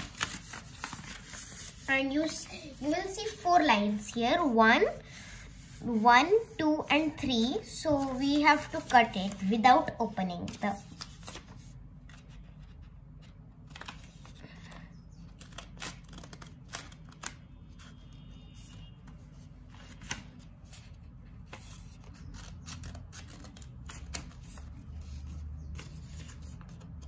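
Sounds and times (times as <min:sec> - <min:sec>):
paper handling: 0:00.0 - 0:03.0, 0:08.0 - 0:18.0, 0:19.1 - 0:27.0
scissors cutting thick paper: 0:15.3 - 0:18.0.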